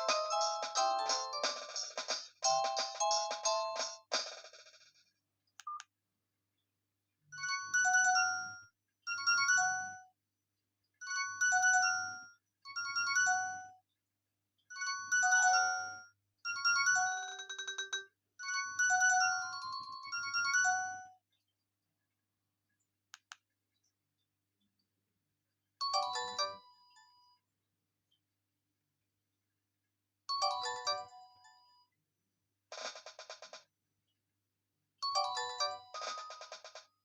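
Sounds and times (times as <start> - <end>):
phone ringtone melody: 0.0 - 4.0, 14.8 - 21.2, 25.9 - 27.0, 30.4 - 31.5, 35.0 - 36.5.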